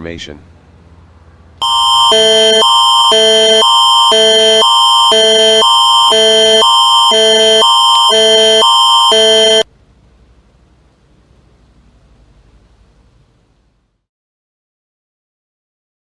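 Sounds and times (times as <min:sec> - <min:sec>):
alert signal alternating chords: 0:01.6 - 0:09.6.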